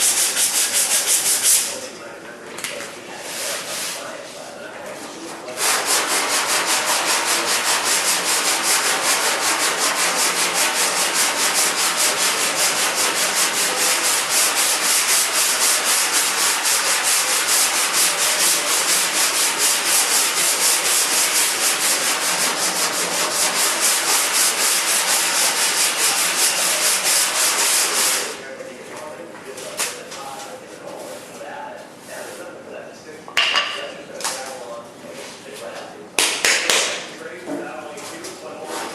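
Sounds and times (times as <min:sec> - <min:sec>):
sandpaper sanding a surface: 0:00.0 - 0:01.8, 0:03.2 - 0:04.1, 0:05.6 - 0:28.4.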